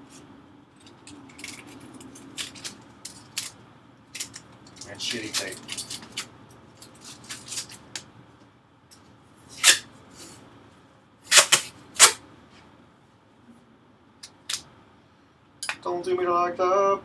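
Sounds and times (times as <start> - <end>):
handling clicks and rustling: 0.8 - 8.0
masking tape ripping: 11.3 - 12.2.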